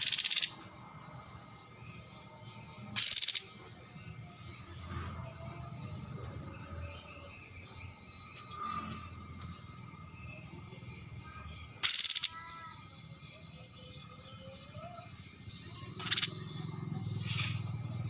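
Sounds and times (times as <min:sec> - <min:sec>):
harsh rapid bird calls: 0:00.0 - 0:00.8, 0:01.9 - 0:05.6, 0:10.3 - 0:18.0
high bird chirping: 0:00.0 - 0:18.0
low background hum: 0:00.0 - 0:18.0.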